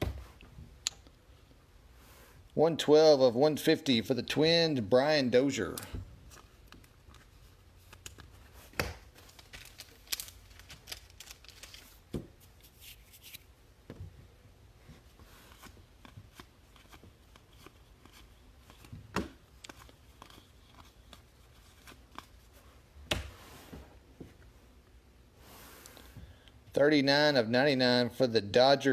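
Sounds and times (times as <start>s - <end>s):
cards rustling: 5.6s - 13.5s, 15.1s - 22.8s.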